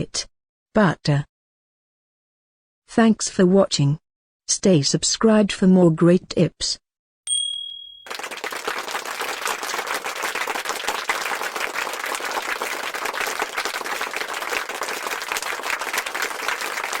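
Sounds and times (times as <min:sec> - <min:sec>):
crowd applause: 0:08.1 - 0:17.0.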